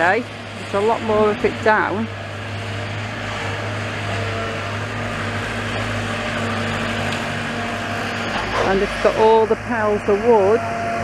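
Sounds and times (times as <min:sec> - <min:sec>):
engine running steadily: 0:00.0 - 0:11.0
steady tones: 0:00.0 - 0:11.0.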